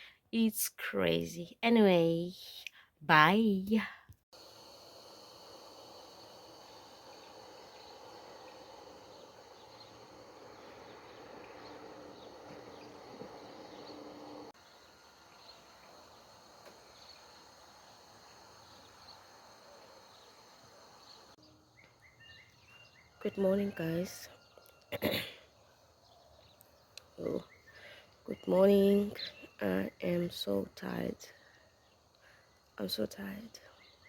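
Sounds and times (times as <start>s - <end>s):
low hum: 4.4s - 21.4s
faint chirps: 4.4s - 34.0s
insect trill: 4.4s - 34.0s.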